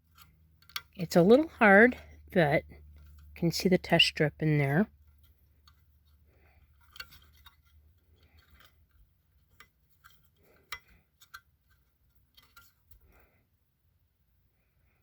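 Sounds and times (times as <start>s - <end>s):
objects clicking and tapping: 5.1s - 13.2s.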